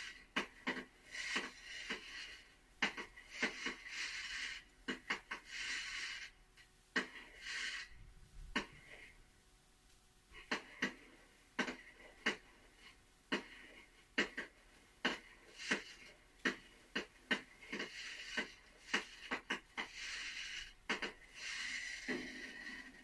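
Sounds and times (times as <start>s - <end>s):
fireworks hissing whooshes: 3.2s - 6.3s, 7.0s - 8.0s, 17.7s - 23.0s.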